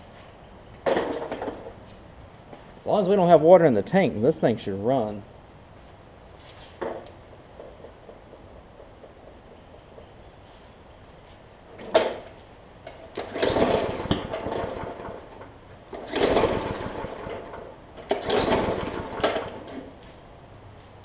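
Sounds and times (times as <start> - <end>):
mower engine cranking: 0.8 - 1.8, 11.7 - 20.0.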